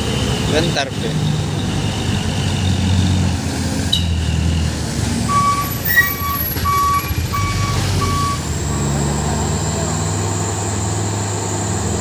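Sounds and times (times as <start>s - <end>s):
truck engine running: 0.0s - 12.0s
reversing alarm beeping: 5.3s - 9.0s.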